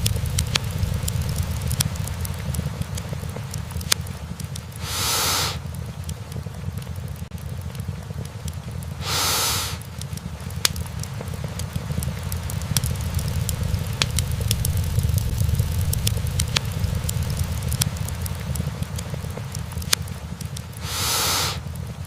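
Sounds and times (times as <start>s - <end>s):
fire flames rumbling: 0.0s - 22.0s
logs crackling and popping: 0.0s - 22.0s
rushing hiss: 4.8s - 5.7s, 9.0s - 10.0s, 20.8s - 21.7s.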